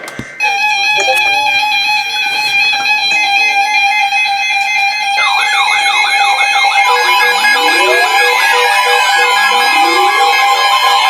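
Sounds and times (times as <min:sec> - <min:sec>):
short broken beeps: 0:01.0 - 0:01.6, 0:05.2 - 0:11.0
high-pitched alarm tone: 0:01.0 - 0:01.8, 0:04.9 - 0:11.0
warbling siren-like alert: 0:01.0 - 0:01.8, 0:04.9 - 0:11.0.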